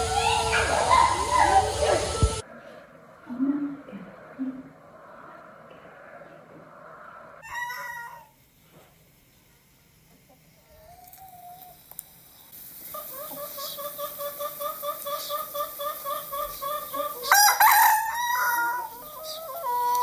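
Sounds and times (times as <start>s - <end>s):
rooster crowing loudly: 7.4s - 8.4s, 17.2s - 20.0s
chickens clucking: 12.8s - 20.0s.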